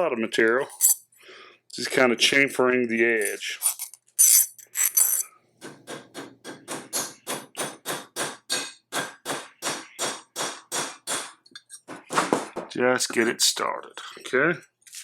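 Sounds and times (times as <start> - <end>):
file scraping steel: 0.6 - 1.1, 3.2 - 7.4.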